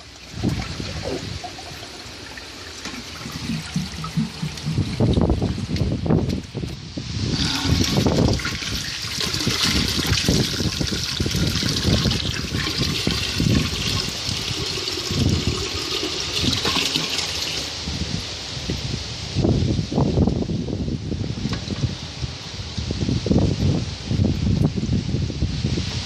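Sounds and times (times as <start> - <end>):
water rushing through toilet: 0.0 - 6.0, 7.3 - 17.7
low bumps and rumbles: 2.9 - 8.5.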